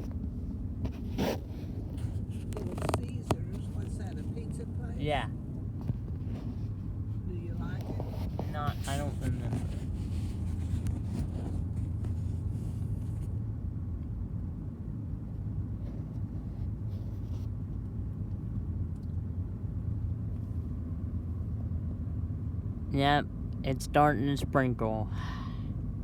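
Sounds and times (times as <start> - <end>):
road and engine rumble in car: 0.0 - 26.0.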